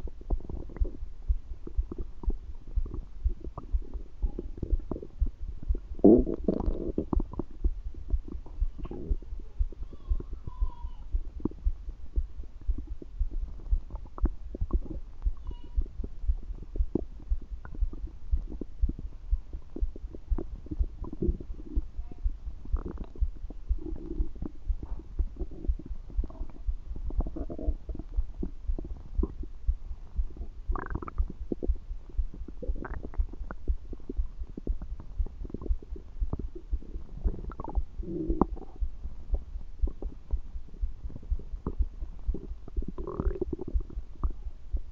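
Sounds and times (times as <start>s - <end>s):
stomach gurgling: 0.0s - 44.9s.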